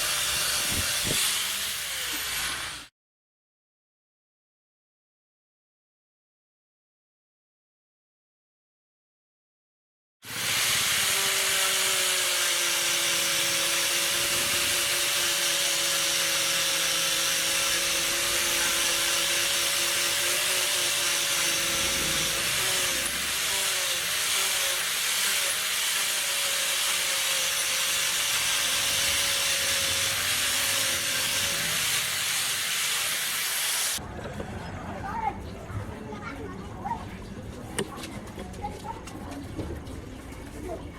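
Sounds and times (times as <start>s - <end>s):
power tool grinding: 0.0s - 2.9s, 10.2s - 34.0s.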